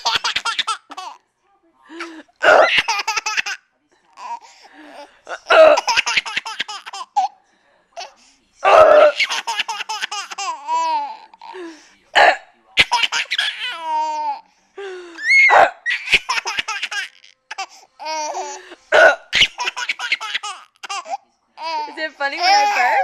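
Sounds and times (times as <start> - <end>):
baby laughing: 0.0 - 1.2, 2.4 - 7.4, 8.8 - 11.6, 12.8 - 14.4, 15.2 - 23.0.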